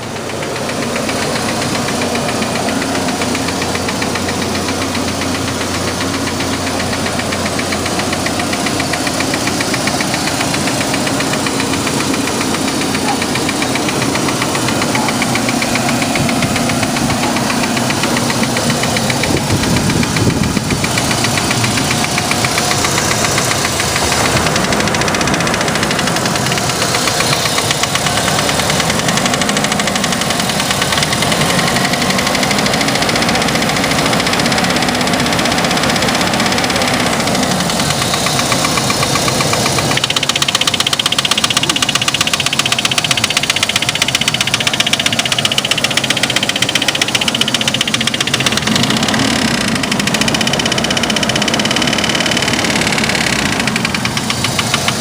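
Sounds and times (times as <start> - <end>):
engine knocking rattle: 0.0 - 55.0.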